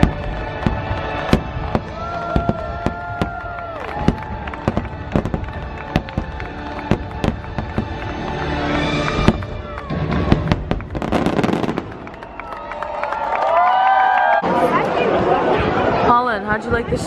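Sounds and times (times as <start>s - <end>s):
fireworks bursting: 0.0s - 12.5s
orchestral music over loudspeakers: 4.0s - 11.8s.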